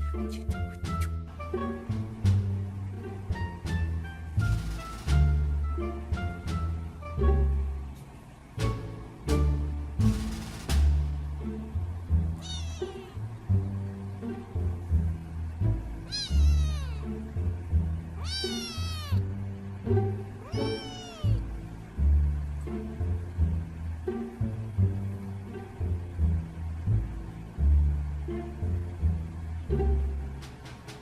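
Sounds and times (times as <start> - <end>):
music with plucked bass: 0.0 - 7.9
deep music notes: 0.0 - 31.0
kitten meowing: 12.4 - 13.2, 16.0 - 17.1, 18.2 - 19.2, 20.4 - 21.4.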